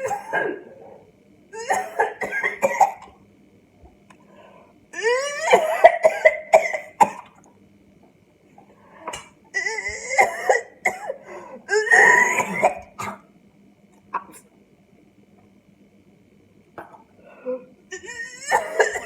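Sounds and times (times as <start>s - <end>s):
sharp coughs: 0.0s - 0.7s, 1.6s - 3.2s, 5.5s - 7.3s, 10.1s - 13.3s, 18.4s - 19.0s
person gagging: 17.4s - 19.0s.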